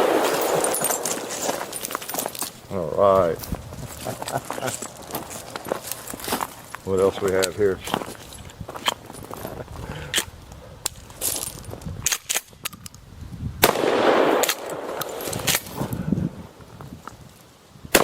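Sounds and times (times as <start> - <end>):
loud shotgun shot with echo: 13.6 - 15.0.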